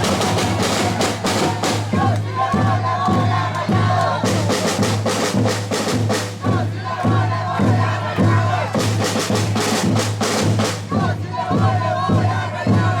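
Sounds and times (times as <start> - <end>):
crowd noise: 0.0 - 13.0
music with steady drum beat: 0.0 - 13.0
sharp drum or clap strokes: 3.0 - 10.9.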